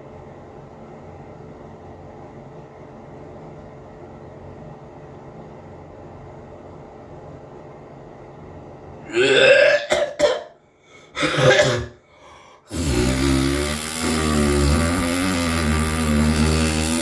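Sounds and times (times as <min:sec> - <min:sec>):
person coughing or burping: 0:09.1 - 0:12.0
droning buzz: 0:12.7 - 0:17.0.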